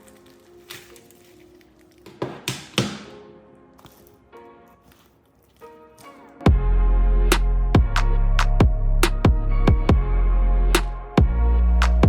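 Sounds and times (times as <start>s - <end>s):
electronic music with heavy bass: 6.5s - 12.0s.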